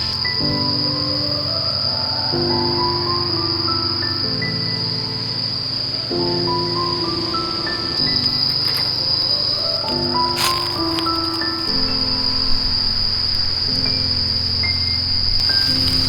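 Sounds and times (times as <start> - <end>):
insects droning: 0.0 - 16.0
slow background music: 0.0 - 16.0.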